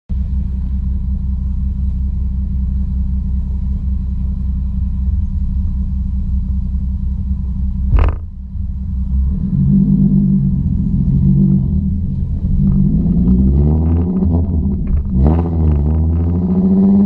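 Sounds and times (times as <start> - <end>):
car engine droning: 0.1 - 17.0
sharp exhaust pop: 7.9 - 8.5.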